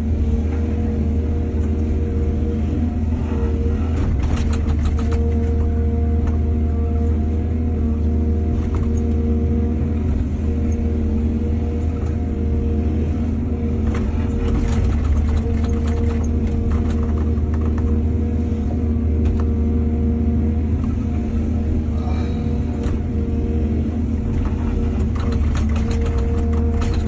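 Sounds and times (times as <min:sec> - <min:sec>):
excavator diesel engine running: 0:00.0 - 0:27.0
clattering and scraping: 0:24.3 - 0:27.0.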